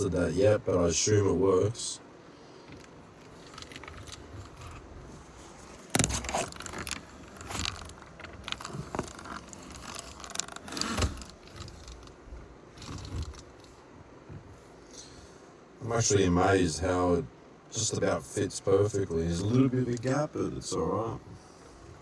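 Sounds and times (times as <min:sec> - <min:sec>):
objects clicking and scraping: 0:02.7 - 0:12.2, 0:12.8 - 0:13.8.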